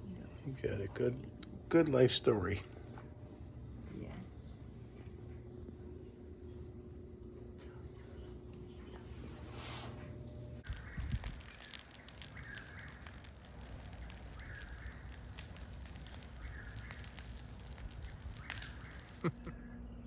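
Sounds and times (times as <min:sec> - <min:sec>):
bird calling: 0:10.6 - 0:19.5
sharp clicks: 0:10.6 - 0:19.5.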